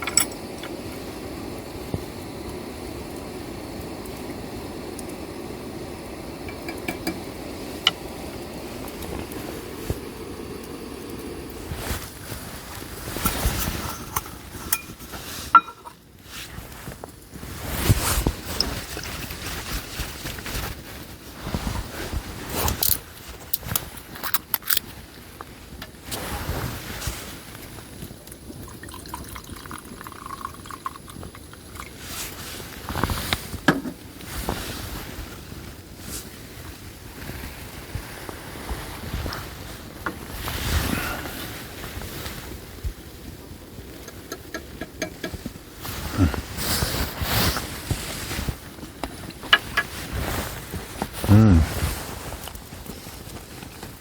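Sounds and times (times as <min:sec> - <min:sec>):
clinks of things handled: 0:00.0 - 0:00.7, 0:13.9 - 0:16.0, 0:22.7 - 0:24.9
liquid pouring and dripping: 0:28.2 - 0:32.3.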